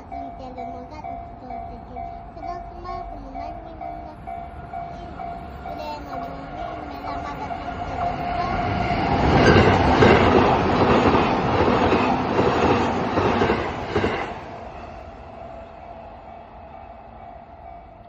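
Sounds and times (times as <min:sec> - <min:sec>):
crossing warning bell ringing: 0:00.0 - 0:18.0
train wheels clattering over rail joints: 0:06.0 - 0:14.5.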